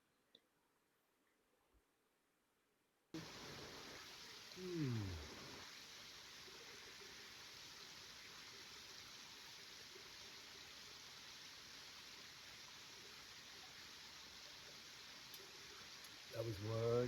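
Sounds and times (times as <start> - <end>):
faint stream rushing: 3.2 - 17.0.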